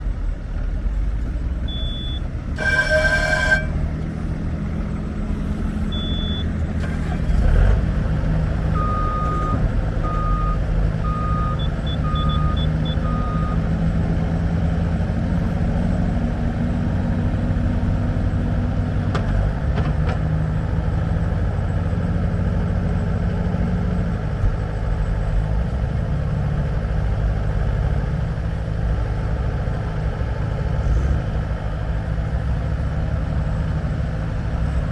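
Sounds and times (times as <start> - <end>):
diesel engine running: 0.0 - 34.9
short electronic beeps: 1.7 - 4.0, 5.9 - 6.6, 8.7 - 13.6
loud honk-like tone: 2.6 - 4.2.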